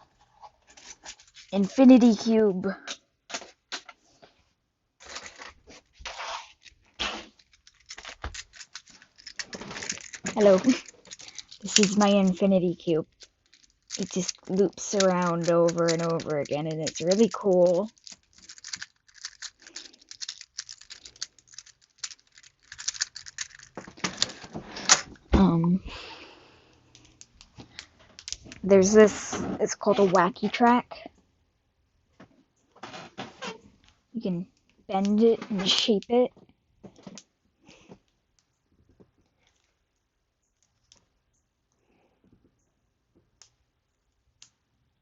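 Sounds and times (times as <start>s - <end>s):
fidget toys rustling: 5.0s - 25.2s, 26.9s - 30.7s
fidget toy clicks: 13.5s - 23.8s.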